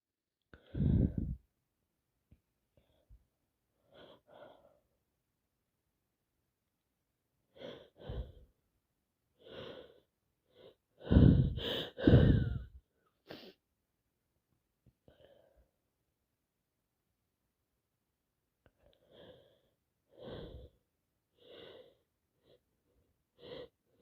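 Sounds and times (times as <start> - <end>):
person sniffing: 13.3 - 13.6.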